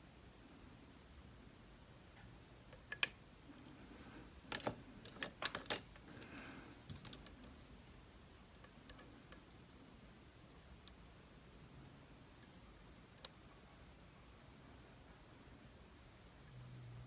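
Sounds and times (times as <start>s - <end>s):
lock picks clicking in a lock: 4.5s - 7.5s.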